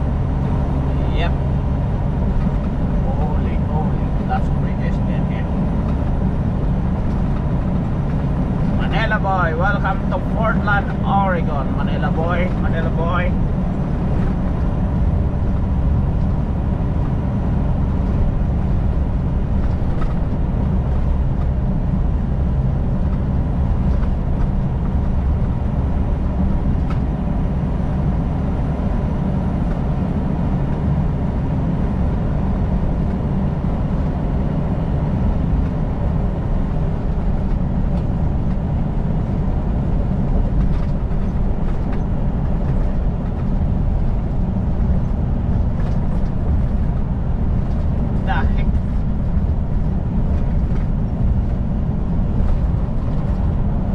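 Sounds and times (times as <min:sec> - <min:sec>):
truck engine and tyre drone: 0:00.0 - 0:53.9.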